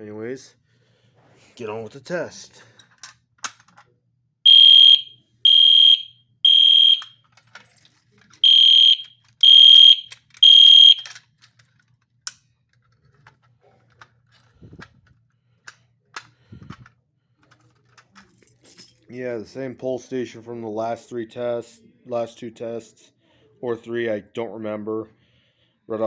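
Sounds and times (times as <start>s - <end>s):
fire alarm horn beeping: 4.5s - 7.2s, 8.4s - 11.2s.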